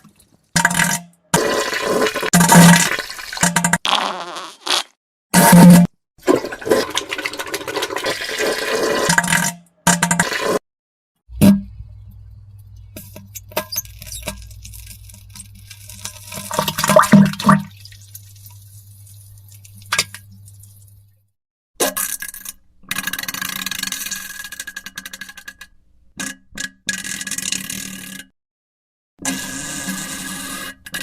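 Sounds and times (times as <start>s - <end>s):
wet fart sputtering: 1.4s - 5.0s.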